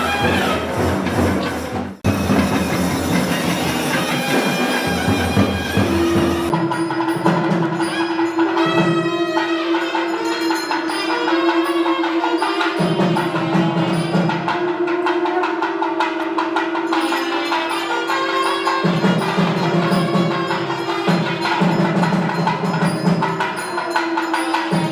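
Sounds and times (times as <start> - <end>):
drum strokes: 0.0 - 9.6, 18.4 - 24.9
noisy crowd: 0.0 - 24.9.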